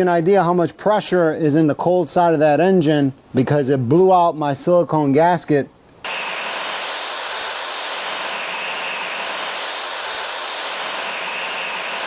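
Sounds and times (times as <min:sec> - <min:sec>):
turbojet engine running: 0:06.1 - 0:12.0.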